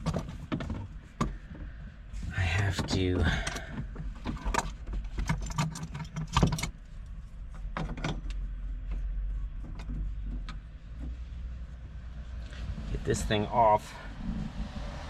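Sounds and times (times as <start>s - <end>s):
metal clicks and knocks from tools: 2.8s - 6.8s.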